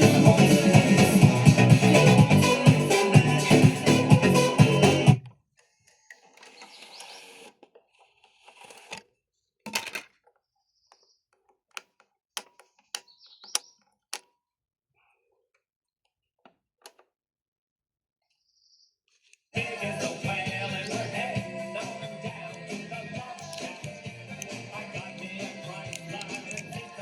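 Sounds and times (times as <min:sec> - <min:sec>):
car radio music: 0:00.0 - 0:05.2, 0:19.6 - 0:27.0.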